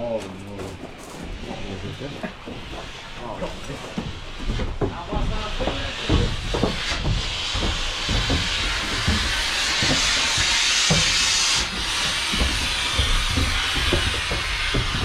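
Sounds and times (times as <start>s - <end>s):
smoke grenade hissing: 5.2s - 15.0s.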